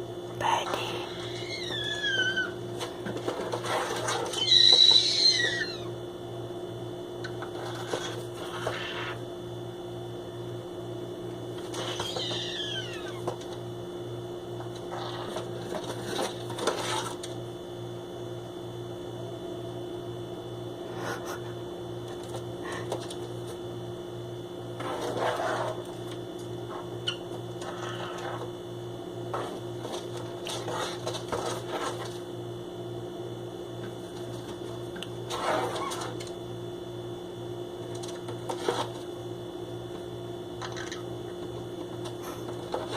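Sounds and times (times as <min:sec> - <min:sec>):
pulsing machine hum: 0:00.0 - 0:42.9
bird scratching in cardboard boxes: 0:15.0 - 0:17.3, 0:29.3 - 0:32.2, 0:38.3 - 0:39.1.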